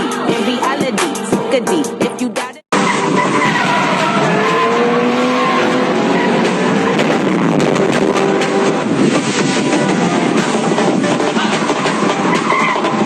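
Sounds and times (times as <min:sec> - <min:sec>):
car engine running hard: 0:02.7 - 0:13.0
tyres squealing: 0:02.8 - 0:07.2, 0:11.4 - 0:13.0.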